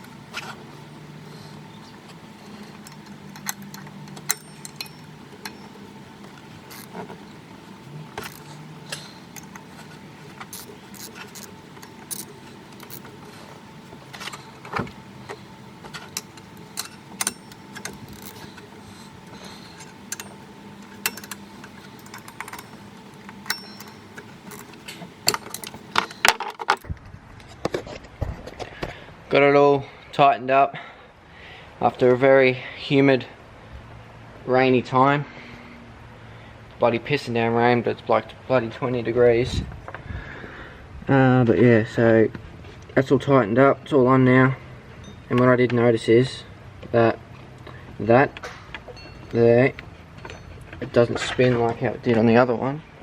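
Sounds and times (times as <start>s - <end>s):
faint steady hum: 0.0s - 53.0s
metallic clinks of hand tools: 2.8s - 5.8s, 19.8s - 22.8s, 23.4s - 26.3s, 48.4s - 51.4s.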